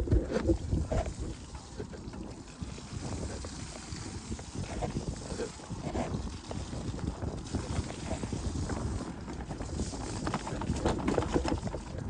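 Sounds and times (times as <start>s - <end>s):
wind rumble on microphone: 0.0s - 12.0s
mountain bike clattering: 5.6s - 12.0s.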